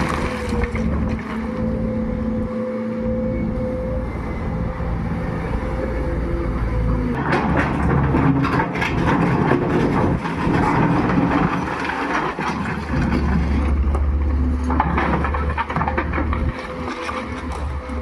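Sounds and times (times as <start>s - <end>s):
excavator clanks and rattles: 0.0s - 1.8s, 6.8s - 18.0s
excavator diesel engine rumble: 0.0s - 18.0s.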